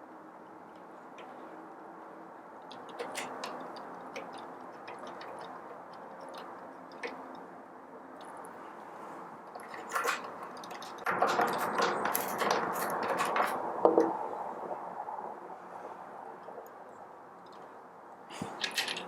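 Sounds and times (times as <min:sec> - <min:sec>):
small metal parts clattering: 0:02.7 - 0:07.4, 0:09.5 - 0:13.8, 0:18.4 - 0:19.0.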